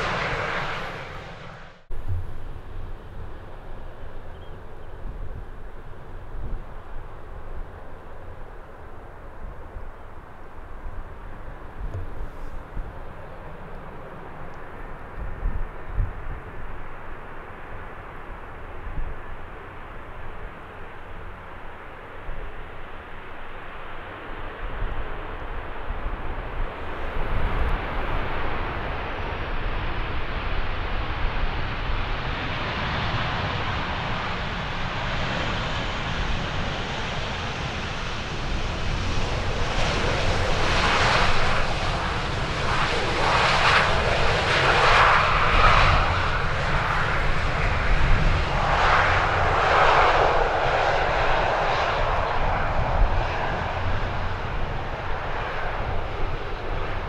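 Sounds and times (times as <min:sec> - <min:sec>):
high engine whine: 0:00.0 - 0:23.4
jet airliner passing: 0:00.0 - 0:57.0
wind rumble on microphone: 0:00.0 - 0:57.0.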